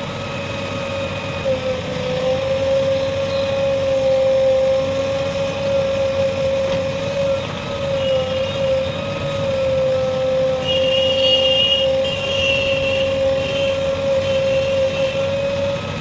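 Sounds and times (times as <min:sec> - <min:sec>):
diesel engine whining: 0:00.0 - 0:16.0.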